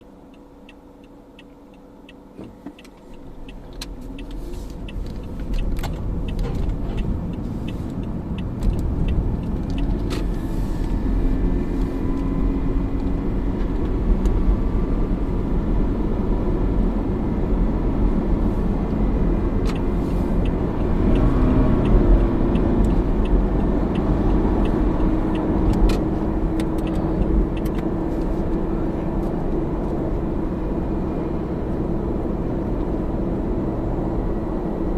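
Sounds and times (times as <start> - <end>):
car road and tyre rumble: 0.0 - 34.9
faint regular ticking: 0.2 - 11.0, 19.7 - 27.8.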